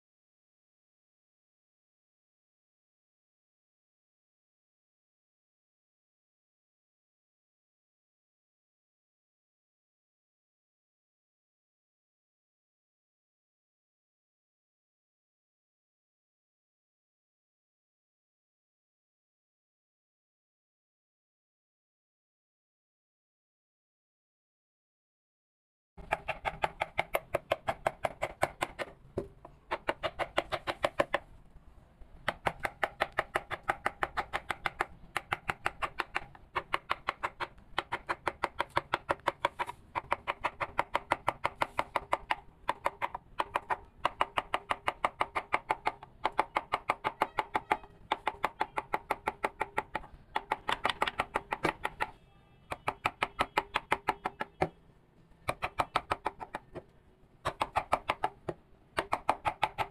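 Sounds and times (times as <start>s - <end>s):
mallet tapping a chisel: 26.0s - 31.2s, 32.2s - 54.8s, 55.4s - 59.9s.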